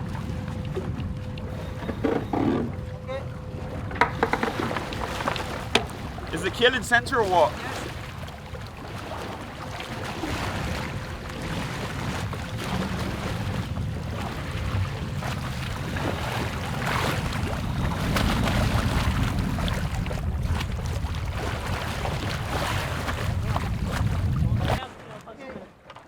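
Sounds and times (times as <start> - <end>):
water rushing: 0.0 - 24.8
wind: 0.0 - 26.0
knocks: 3.9 - 5.0
wind gusts on microphone: 10.1 - 24.8.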